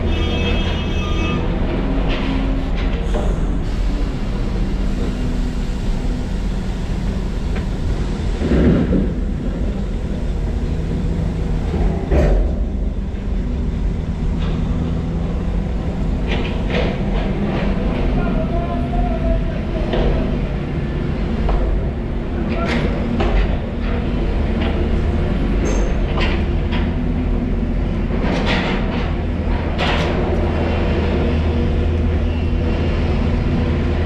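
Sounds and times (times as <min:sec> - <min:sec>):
heavy machinery diesel engine: 0:00.0 - 0:34.0.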